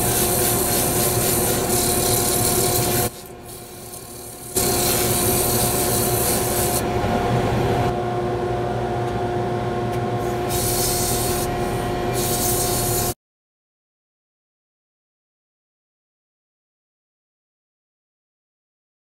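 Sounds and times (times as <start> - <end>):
abrasive rubbing on wood: 0.0 - 6.8
lathe whine: 0.0 - 13.2.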